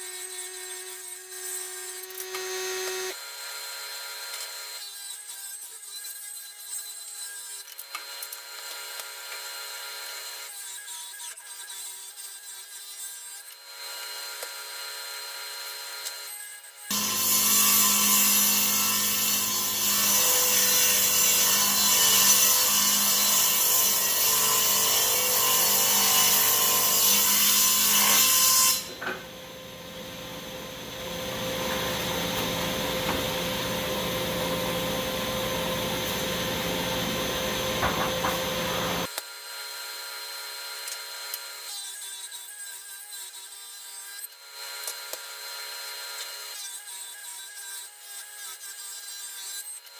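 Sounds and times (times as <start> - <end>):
table saw cutting wood: 0.0 - 49.9.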